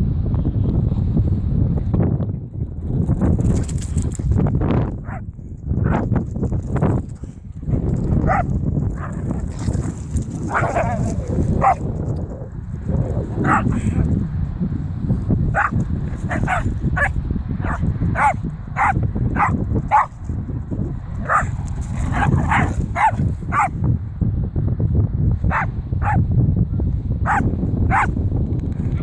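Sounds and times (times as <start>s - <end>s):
dog barking: 5.0s - 5.2s, 8.3s - 9.2s, 10.5s - 11.9s, 13.4s - 14.0s, 15.5s - 20.1s, 21.2s - 23.8s, 25.5s - 26.2s, 27.3s - 28.2s.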